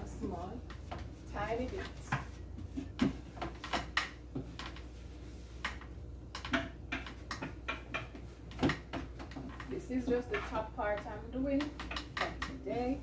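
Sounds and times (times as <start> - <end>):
items clicking in cupboard: 6.4 - 12.6.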